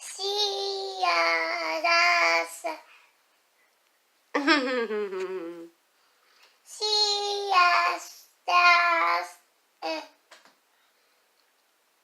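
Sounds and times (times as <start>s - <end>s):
child speaking: 0.1s - 2.8s, 6.7s - 10.2s.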